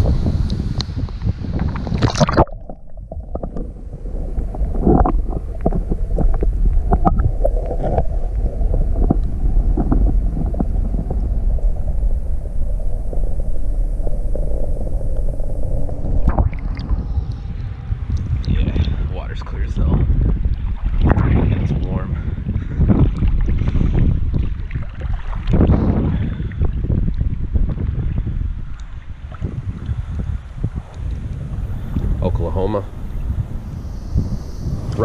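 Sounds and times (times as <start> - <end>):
muffled underwater rumble: 0.0 - 35.0
water gurgling: 1.5 - 35.0
irregular underwater knocks: 4.5 - 11.2.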